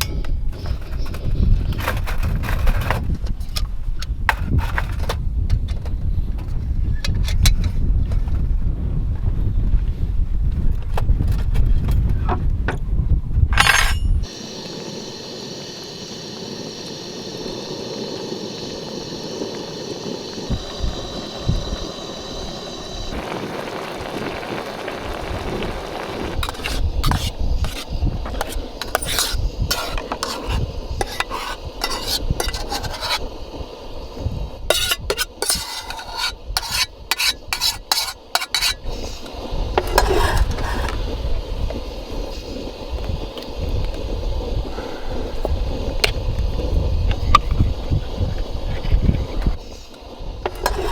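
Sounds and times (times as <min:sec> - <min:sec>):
utensil clinking and scraping pan: 0:13.6 - 0:14.2, 0:26.4 - 0:33.3, 0:34.7 - 0:41.0, 0:50.4 - 0:50.9
food sizzling in a pan: 0:14.2 - 0:50.9.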